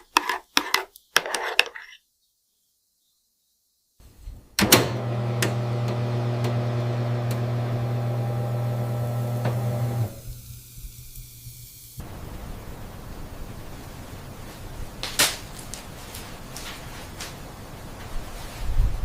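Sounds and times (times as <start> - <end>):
microwave click: 4.6 - 10.2
microwave oven humming: 4.6 - 11.7.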